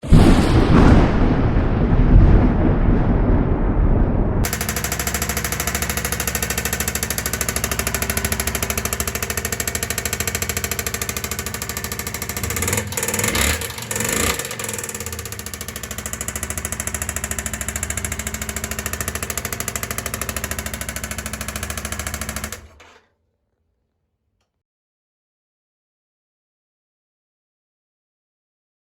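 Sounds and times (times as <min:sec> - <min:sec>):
motorcycle engine idling: 0:04.5 - 0:23.0.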